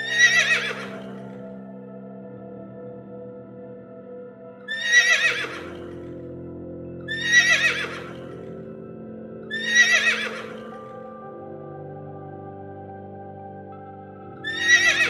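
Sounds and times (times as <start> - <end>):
high wavering animal call: 0.0 - 1.4, 4.7 - 5.9, 7.1 - 8.4, 9.5 - 10.8, 14.5 - 15.0
background music: 0.0 - 15.0.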